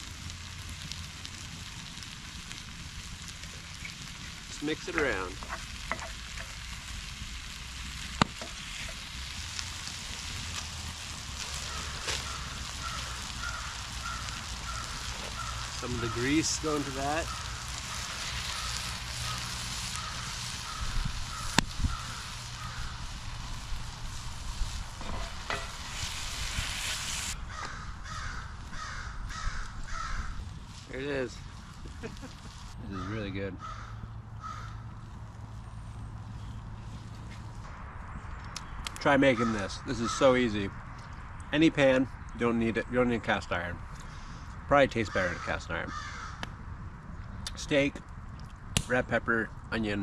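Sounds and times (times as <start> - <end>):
food sizzling in a pan: 0.0 - 27.4
crow cawing: 11.5 - 23.2, 27.4 - 30.4, 32.9 - 35.0, 39.3 - 40.3, 45.1 - 46.6.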